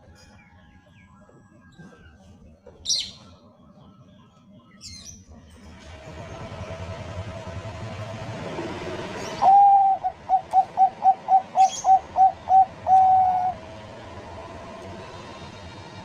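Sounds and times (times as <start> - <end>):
dove cooing: 9.3 - 13.8.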